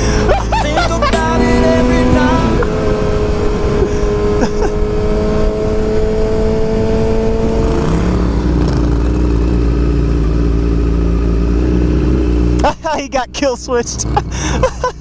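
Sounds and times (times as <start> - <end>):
motorcycle engine at high speed: 0.0 - 15.0
wind rush: 2.3 - 8.6.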